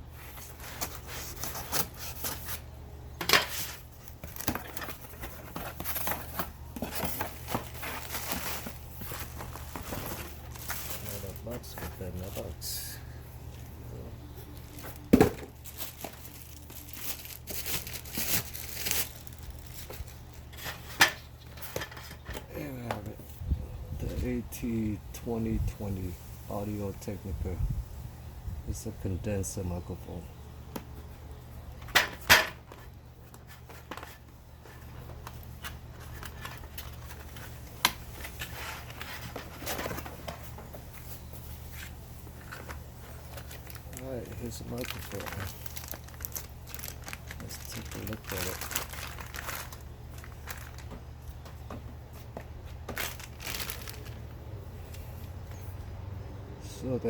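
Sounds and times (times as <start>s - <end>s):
steady low hum: 0.0s - 57.0s
packaging crinkling and rustling: 3.3s - 12.8s, 14.2s - 22.3s, 32.6s - 55.0s.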